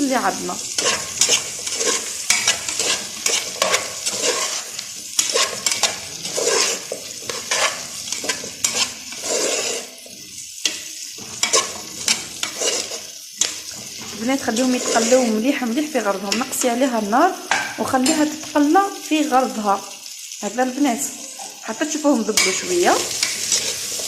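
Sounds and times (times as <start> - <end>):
vegetables frying in a pot: 0.0 - 24.0
utensil scraping and knocking pot: 0.6 - 15.4, 22.4 - 24.0.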